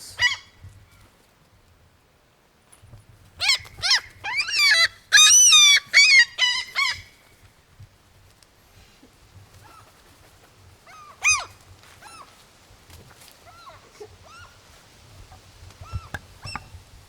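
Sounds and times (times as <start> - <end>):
seagull screeching: 3.4 - 7.0.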